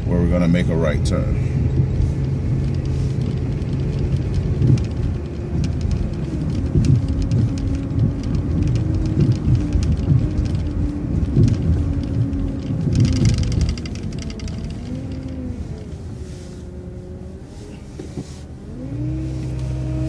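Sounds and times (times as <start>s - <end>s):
bus body rattling: 0.0s - 16.0s
bus engine running: 0.0s - 20.0s.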